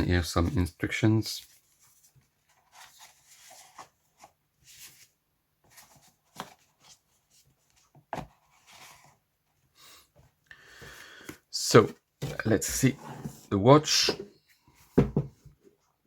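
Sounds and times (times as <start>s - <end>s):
paper rustling: 0.4s - 9.2s.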